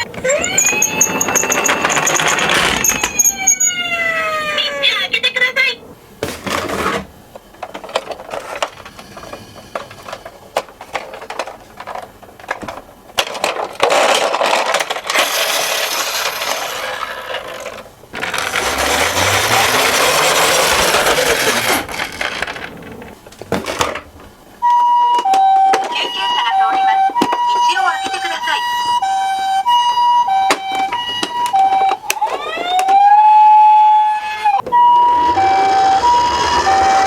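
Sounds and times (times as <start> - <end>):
toy cars clattering and rolling: 0.0 - 3.9, 6.3 - 24.2, 30.4 - 33.8
toy siren alternating two tones: 0.3 - 1.3, 2.8 - 4.8, 24.6 - 37.0.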